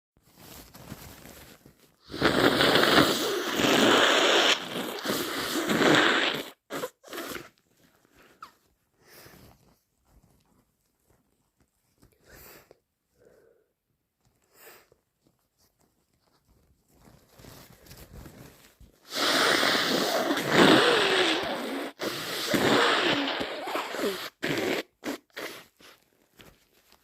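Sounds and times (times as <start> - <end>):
person blowing nose: 2.0 - 7.6, 19.0 - 26.0.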